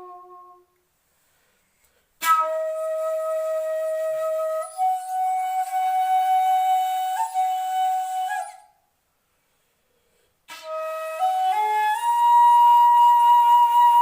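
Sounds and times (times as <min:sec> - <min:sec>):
bamboo flute notes: 0:00.0 - 0:00.8, 0:02.2 - 0:08.8, 0:10.5 - 0:14.0.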